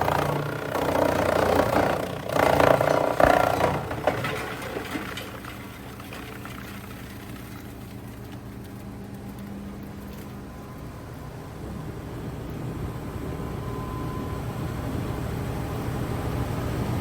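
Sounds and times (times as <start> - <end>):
chipper humming empty: 0.0 - 10.4
wood chipper shredding wood: 0.0 - 10.5.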